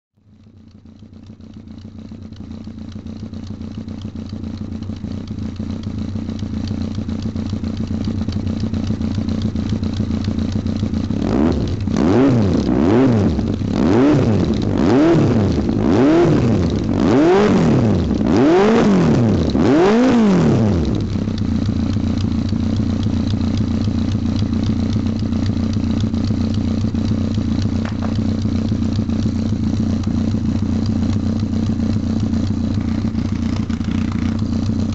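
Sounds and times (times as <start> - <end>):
motorcycle engine idling and revving: 0.2 - 34.9.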